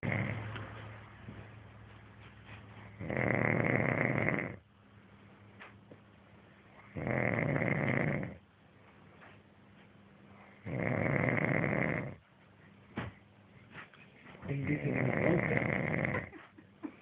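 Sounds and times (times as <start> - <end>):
man snoring: 0.0 - 0.5, 3.0 - 4.6, 6.9 - 8.4, 10.6 - 12.2, 14.6 - 16.3.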